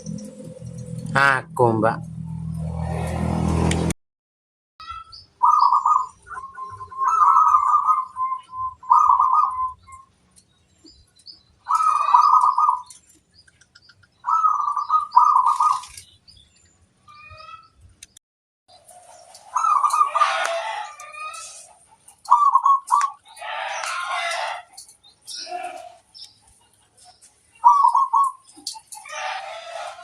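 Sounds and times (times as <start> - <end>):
dove cooing: 5.4 - 10.1, 11.6 - 12.9, 14.2 - 16.0, 19.5 - 24.7, 27.6 - 30.0.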